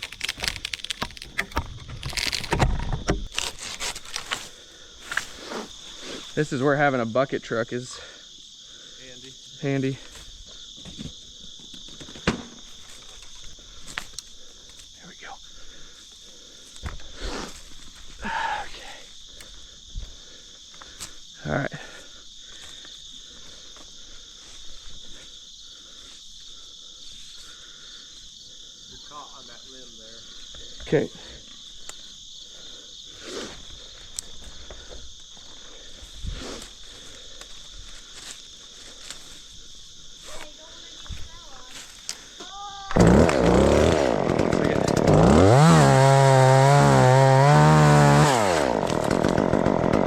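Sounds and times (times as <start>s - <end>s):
insect chorus chirring: 0.0s - 50.0s
chainsaw engine revving: 42.9s - 50.0s.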